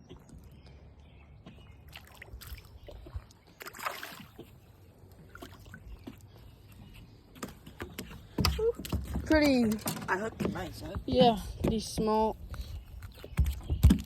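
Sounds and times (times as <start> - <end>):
faint water sounds: 0.0 - 14.0
short water splash: 1.9 - 4.5.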